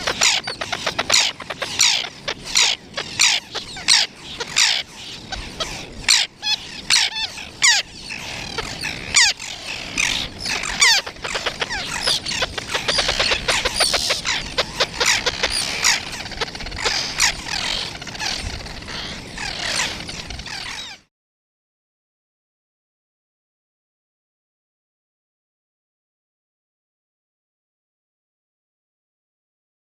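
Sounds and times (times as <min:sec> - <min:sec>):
birds chirping and trilling: 0:00.0 - 0:21.1.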